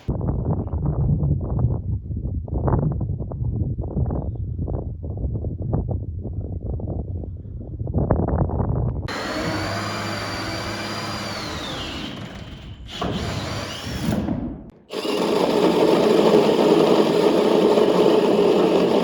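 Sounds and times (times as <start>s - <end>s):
power tool motor running: 9.1s - 19.0s.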